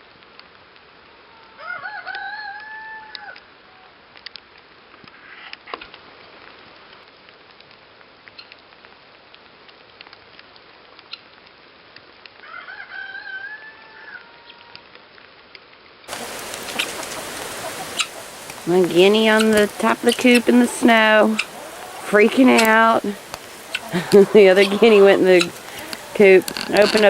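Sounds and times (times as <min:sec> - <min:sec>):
rooster crowing: 0:01.4 - 0:03.4, 0:12.4 - 0:14.7, 0:16.1 - 0:27.0
faint ticks: 0:15.5 - 0:27.0.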